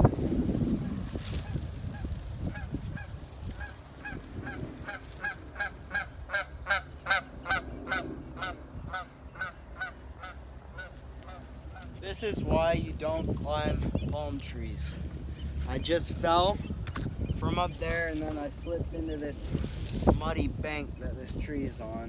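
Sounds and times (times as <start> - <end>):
goose honking: 3.6 - 11.9.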